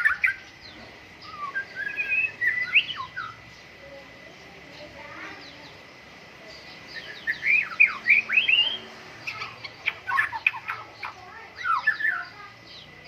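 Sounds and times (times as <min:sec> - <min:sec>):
bird sharp chattering notes: 0:00.0 - 0:13.0
bird slurred whistles: 0:01.2 - 0:03.4.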